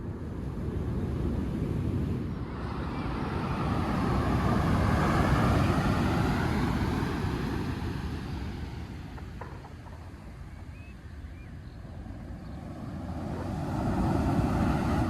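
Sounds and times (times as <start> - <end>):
vehicle passing by: 2.4 - 9.2.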